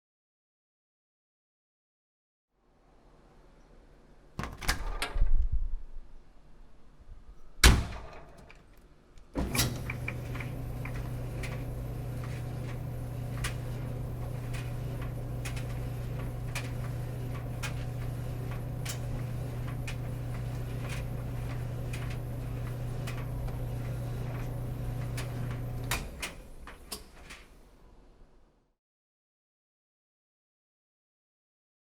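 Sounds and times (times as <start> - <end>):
dryer door shutting: 9.4 - 27.6
dryer humming: 9.4 - 27.9.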